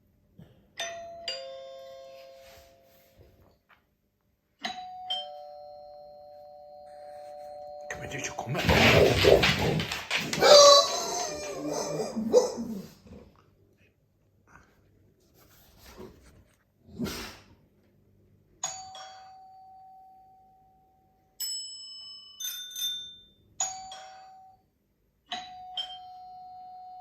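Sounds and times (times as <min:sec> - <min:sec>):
doorbell chimes ringing: 0:00.8 - 0:02.6, 0:04.6 - 0:08.5.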